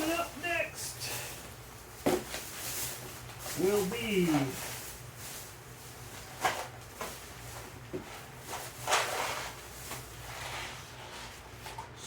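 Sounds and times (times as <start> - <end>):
rustling of items handled: 0.0 - 12.0
items knocking on a bench: 2.0 - 2.4.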